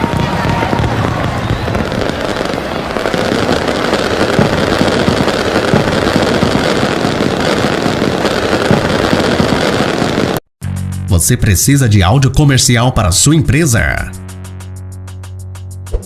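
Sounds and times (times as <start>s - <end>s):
firecrackers rattling: 0.0s - 10.4s.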